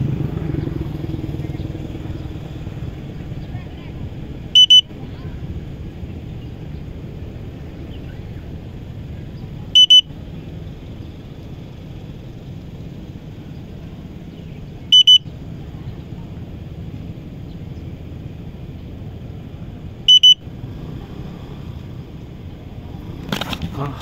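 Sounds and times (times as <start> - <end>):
steady low rumble: 0.0 - 24.0
high double beep alarm: 4.6 - 4.9, 9.8 - 10.1, 14.9 - 15.3, 20.1 - 20.4.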